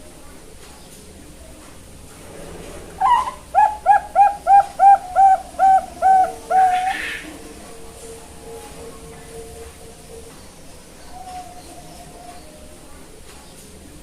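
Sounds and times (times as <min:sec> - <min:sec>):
dove cooing: 0:02.8 - 0:13.2.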